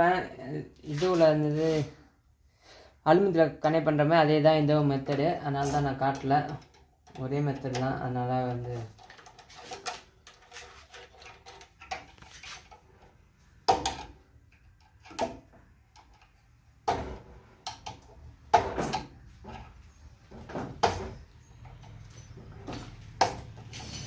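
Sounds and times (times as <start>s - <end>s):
tools and metal parts clacking: 5.1s - 13.1s, 13.7s - 24.0s.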